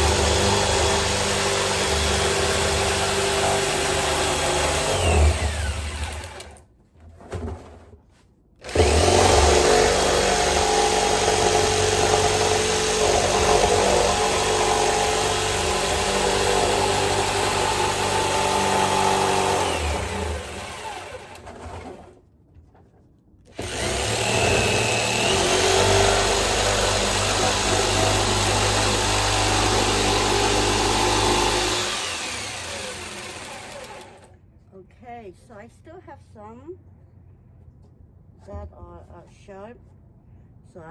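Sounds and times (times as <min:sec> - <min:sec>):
jigsaw cutting through metal barrel: 0:00.0 - 0:06.6, 0:08.6 - 0:22.2, 0:23.5 - 0:34.4.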